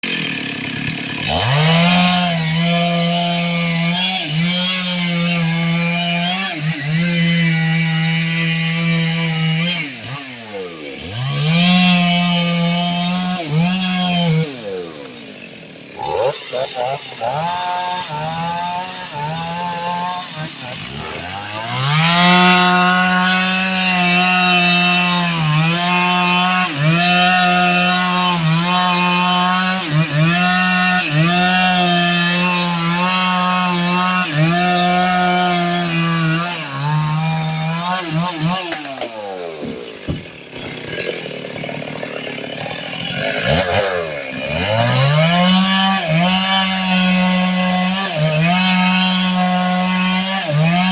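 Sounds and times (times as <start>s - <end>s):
chainsaw cutting wood: 0.0s - 50.9s.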